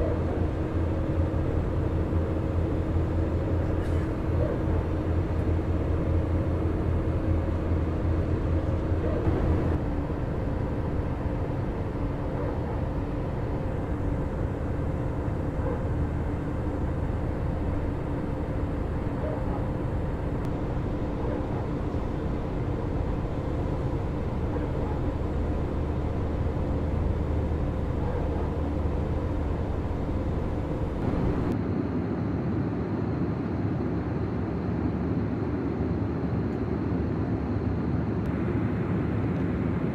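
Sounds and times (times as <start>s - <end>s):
low hum tones: 0.0s - 31.7s
aircraft cabin engine drone: 0.0s - 39.9s.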